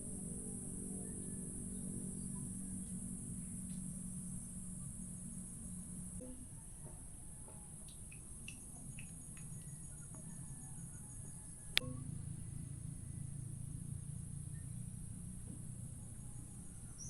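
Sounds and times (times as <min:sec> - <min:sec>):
insect chorus trilling: 0:00.0 - 0:06.2, 0:07.8 - 0:11.8
low rumble: 0:11.8 - 0:17.0.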